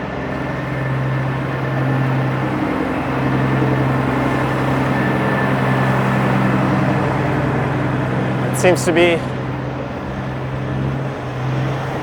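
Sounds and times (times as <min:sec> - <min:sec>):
large engine idling: 0:00.0 - 0:12.0.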